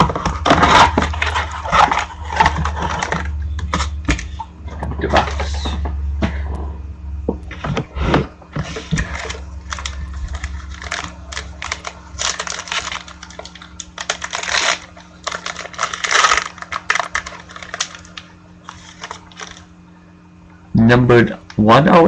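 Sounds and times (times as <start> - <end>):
cardboard and wrapper rustling: 0.0 - 5.8, 8.5 - 19.7.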